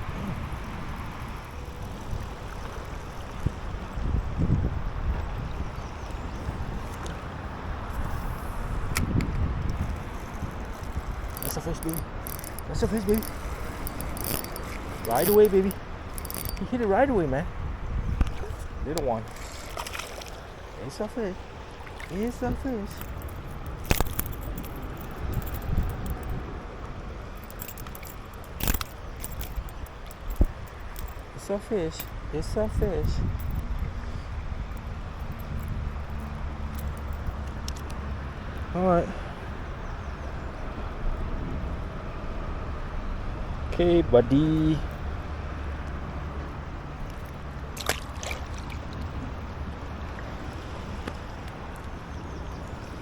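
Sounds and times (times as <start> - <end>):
handling noise: 9.2 - 16.8, 22.1 - 32.2, 34.7 - 38.0
river water rushing: 9.9 - 16.7, 19.2 - 32.3, 47.0 - 53.0
sharp clicks: 11.3 - 16.7, 27.4 - 31.2.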